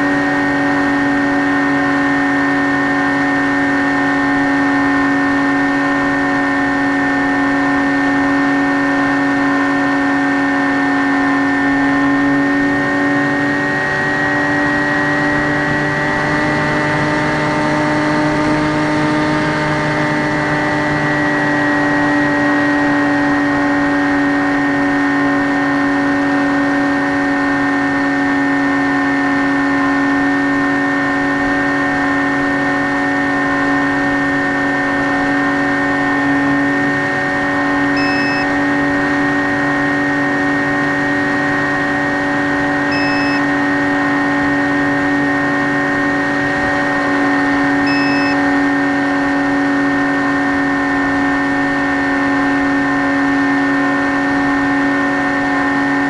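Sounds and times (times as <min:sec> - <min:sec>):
electric motor and propeller drone: 0:00.0 - 0:56.0
faint short beeps: 0:38.0 - 0:38.6, 0:42.9 - 0:43.5, 0:47.8 - 0:48.5.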